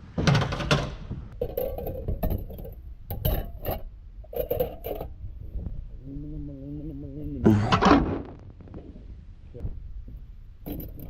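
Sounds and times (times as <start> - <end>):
metal scrap clinking and clattering: 0.3 - 5.2, 10.6 - 11.0.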